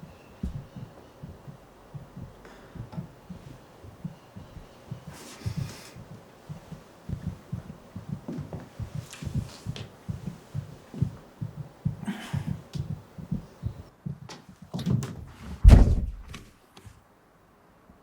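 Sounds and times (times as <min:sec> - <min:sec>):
heavy thud: 0:00.0 - 0:13.9, 0:15.6 - 0:16.4
low quick thumping: 0:00.0 - 0:14.3, 0:15.6 - 0:16.4.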